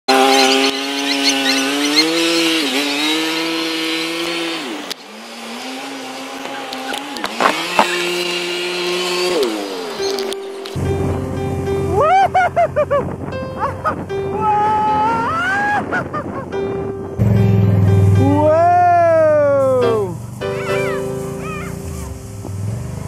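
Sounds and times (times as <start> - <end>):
quad bike engine under throttle: 0.1 - 11.2.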